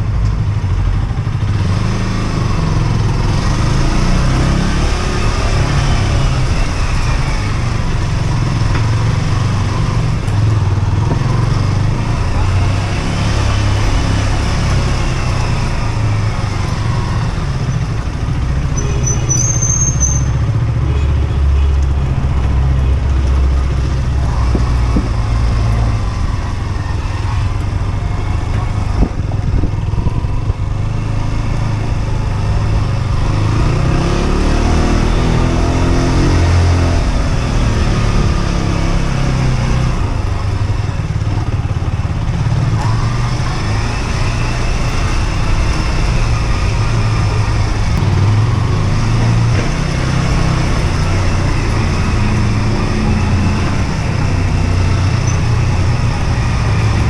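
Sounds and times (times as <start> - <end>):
motorcycle engine running: 0.0 - 34.4.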